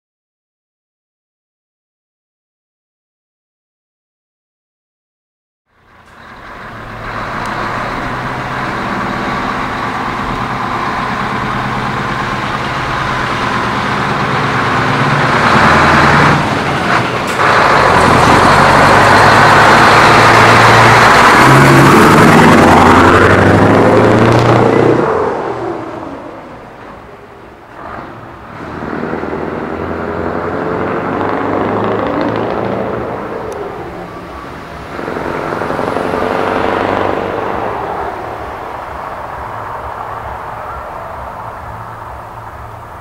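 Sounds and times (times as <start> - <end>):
truck engine accelerating: 5.7 - 43.0
exhaust popping and rattling: 30.8 - 33.3.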